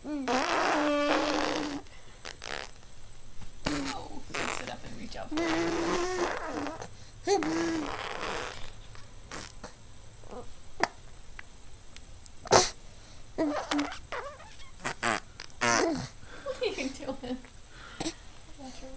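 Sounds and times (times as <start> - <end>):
baby making mouth noises: 0.0 - 2.8, 3.6 - 4.7, 5.3 - 11.0, 12.4 - 12.8, 13.4 - 16.2.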